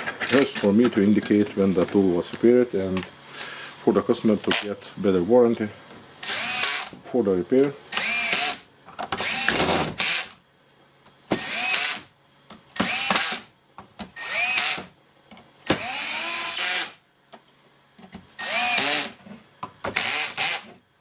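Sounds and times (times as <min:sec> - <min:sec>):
power screwdriver driving screws: 0:06.2 - 0:06.9, 0:08.0 - 0:08.6, 0:11.4 - 0:12.0, 0:12.8 - 0:13.4, 0:14.2 - 0:14.9, 0:15.8 - 0:17.0, 0:18.4 - 0:19.2, 0:19.9 - 0:20.7.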